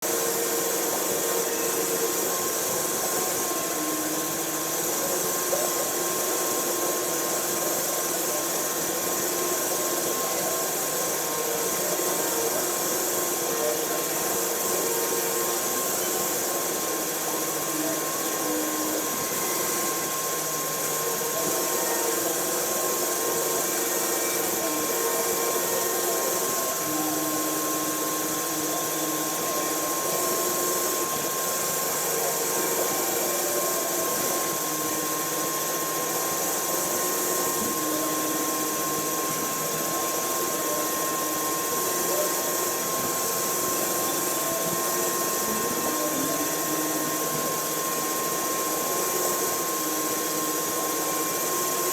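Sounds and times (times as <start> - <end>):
milling machine running: 0.1 - 51.9.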